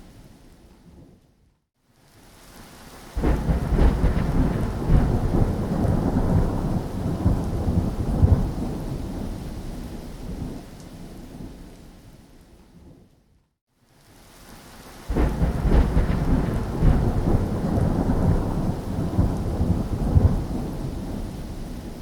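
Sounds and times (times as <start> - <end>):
steady rain: 0.0 - 13.1, 13.7 - 22.0
thunderclap rumbling: 3.2 - 10.6, 15.1 - 22.0.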